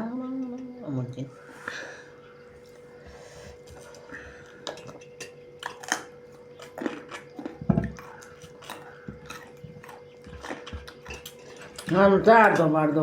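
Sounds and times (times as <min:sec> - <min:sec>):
faint steady hum: 0:00.0 - 0:13.0
chewing and mouth smacking: 0:04.6 - 0:12.6.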